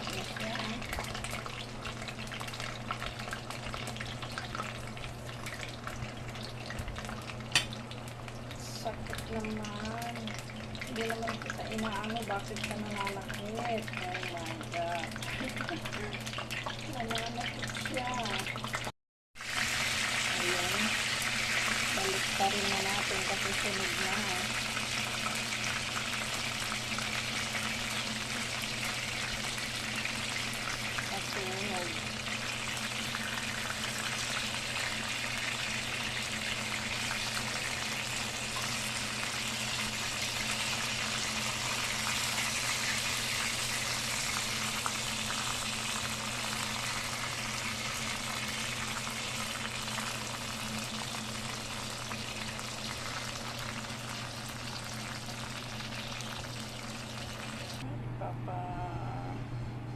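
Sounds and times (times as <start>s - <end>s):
low steady hum: 0.0s - 18.9s, 19.7s - 59.9s
food sizzling in hot oil: 0.0s - 57.8s
oil crackling and popping: 0.1s - 57.8s.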